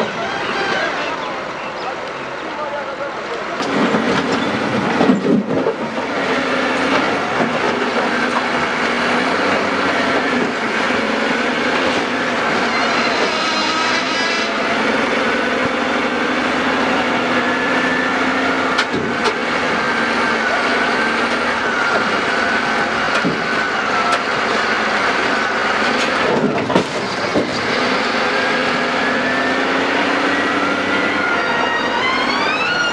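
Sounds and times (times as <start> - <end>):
heavy machinery running: 0.0 - 32.9.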